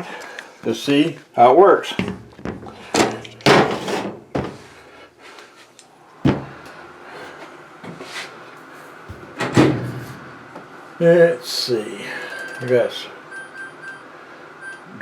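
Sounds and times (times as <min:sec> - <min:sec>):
washing machine knocks and clunks: 0:01.9 - 0:04.8, 0:06.3 - 0:06.6, 0:09.1 - 0:10.3.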